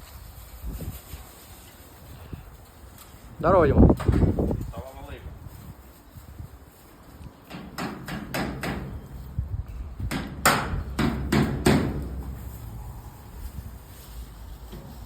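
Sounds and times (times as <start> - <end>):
hammer knocking steel tubes: 10.1 - 12.2.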